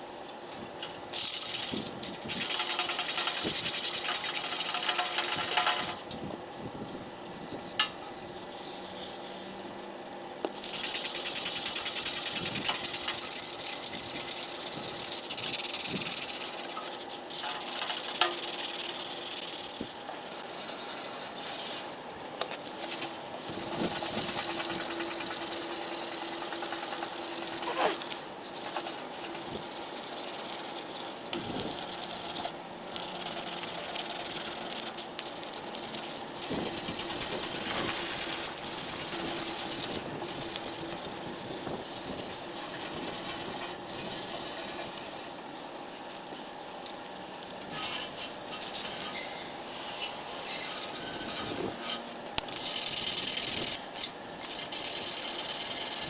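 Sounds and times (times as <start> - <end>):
scrubbing rust off metal can: 1.2 - 6.0, 10.6 - 21.8.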